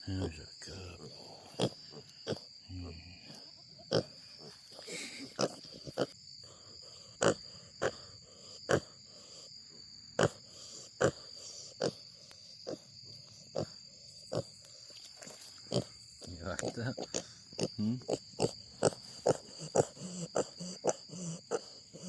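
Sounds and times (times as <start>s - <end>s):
animal snoring: 4.9s - 9.5s, 17.0s - 22.0s.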